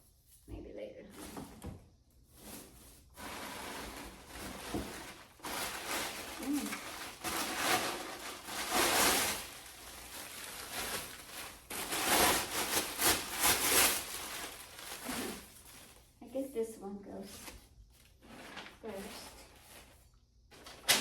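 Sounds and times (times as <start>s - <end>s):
rustling packaging: 2.3s - 16.2s, 17.3s - 21.0s.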